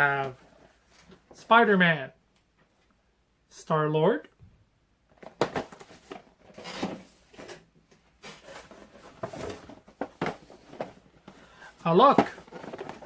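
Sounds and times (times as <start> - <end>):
cardboard and plastic rubbing: 5.2 - 7.6, 8.2 - 13.0.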